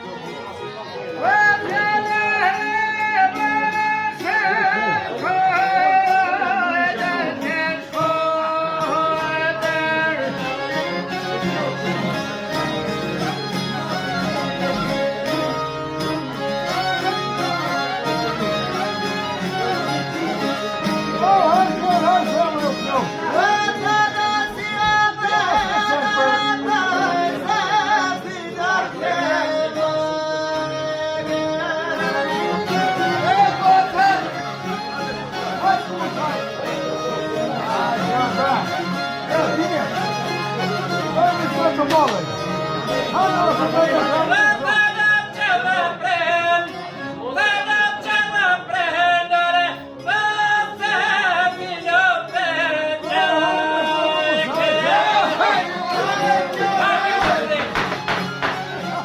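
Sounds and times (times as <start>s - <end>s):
instrumental accompaniment: 0.0s - 59.0s
men singing folk song: 1.2s - 11.0s, 21.1s - 38.8s, 43.2s - 58.9s
person singing with vibrato: 20.6s - 39.1s.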